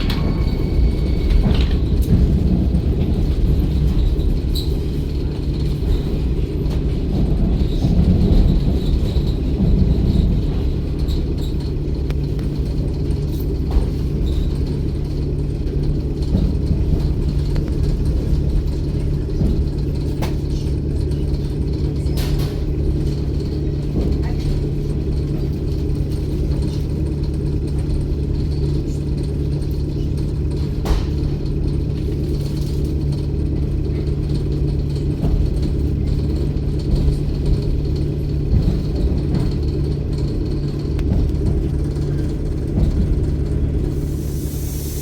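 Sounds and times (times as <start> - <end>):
train rumble: 0.0 - 45.0.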